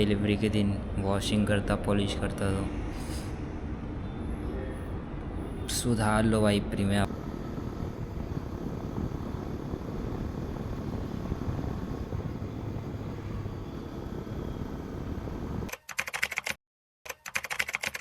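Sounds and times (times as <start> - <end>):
low mechanical rumble: 6.4 - 15.7.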